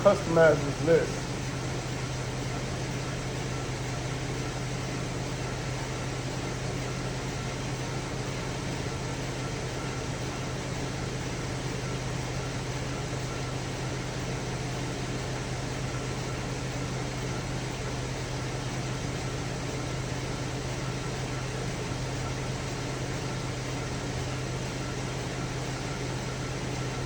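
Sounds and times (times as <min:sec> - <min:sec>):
car engine idling: 0:00.0 - 0:09.4.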